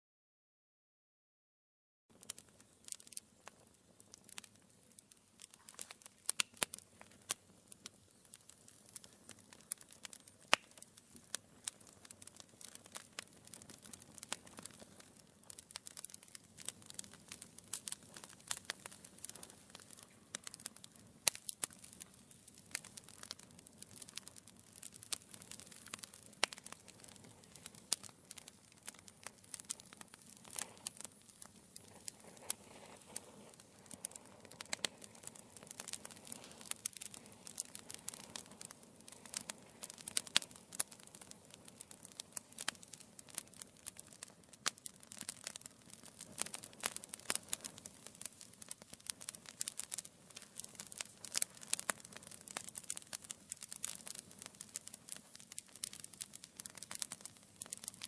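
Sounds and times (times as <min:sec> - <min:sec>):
logs crackling and popping: 0:02.1 - 0:58.0
fire hiss: 0:02.2 - 0:58.0.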